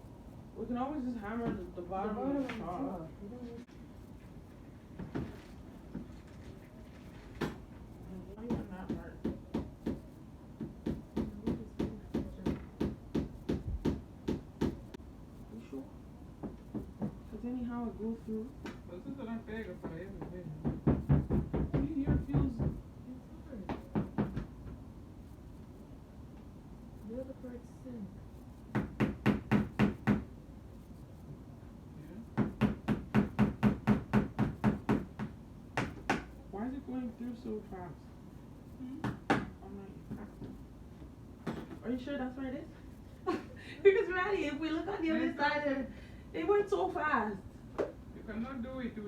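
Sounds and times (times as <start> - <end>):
hammer tapping nails: 10.6 - 14.8, 32.4 - 36.3
hammer striking nails: 32.4 - 36.3.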